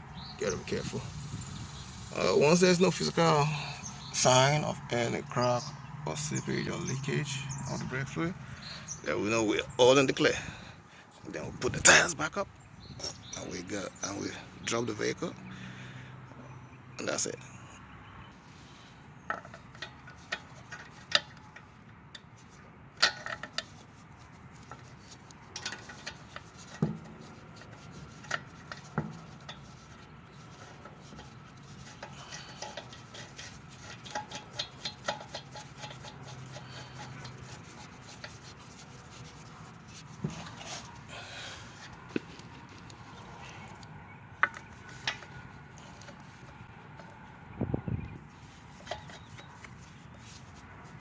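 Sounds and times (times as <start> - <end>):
lug nuts and tools clinking: 12.8 - 14.4, 18.6 - 47.6, 48.3 - 51.0
metal clacking on metal: 30.6 - 38.8.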